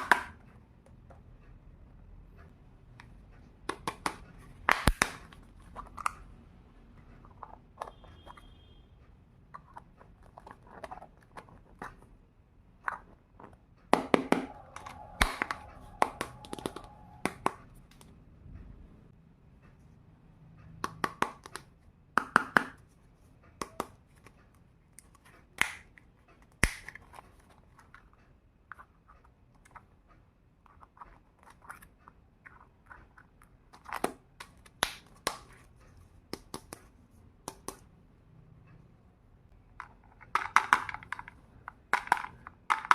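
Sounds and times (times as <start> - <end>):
plastic toy pieces clicking: 39.8 - 42.9.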